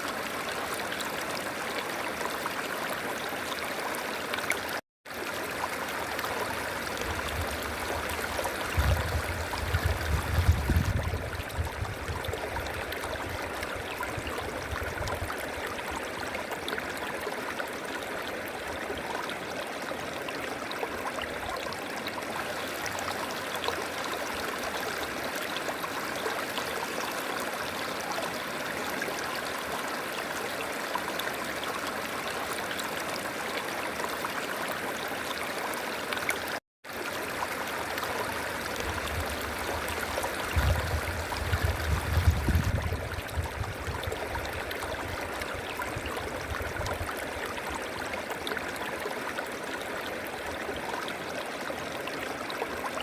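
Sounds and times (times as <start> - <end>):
river flowing: 15.6 - 53.0.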